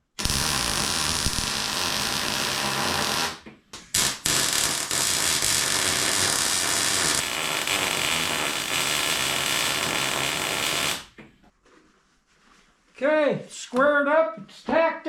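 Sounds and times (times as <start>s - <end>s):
welding arc crackling and hissing: 0.0s - 11.1s.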